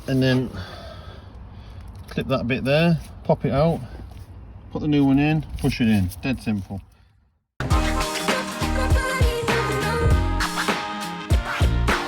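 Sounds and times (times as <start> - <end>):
music with steady drum beat: 7.6 - 12.0.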